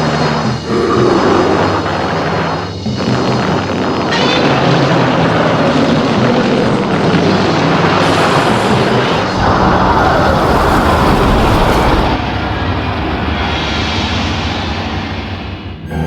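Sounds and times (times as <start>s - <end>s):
monster battle rumbling roar: 0.0s - 12.6s.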